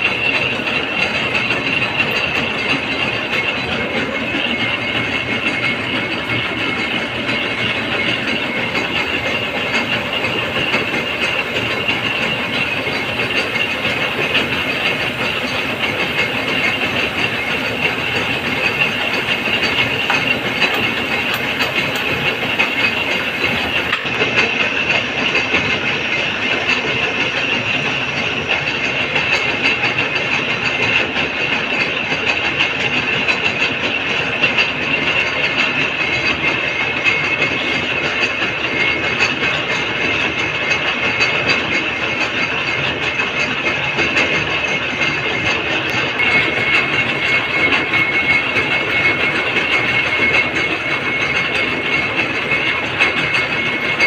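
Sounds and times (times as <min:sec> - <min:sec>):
gear cutting machine clatter: 0:00.0 - 0:54.0
faint steady whine: 0:06.7 - 0:24.0, 0:45.9 - 0:54.0.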